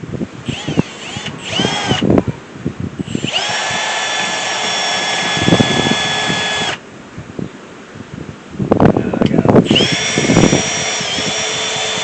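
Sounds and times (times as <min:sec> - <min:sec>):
power drill whining: 0:00.4 - 0:02.1, 0:03.0 - 0:06.8, 0:09.6 - 0:12.0.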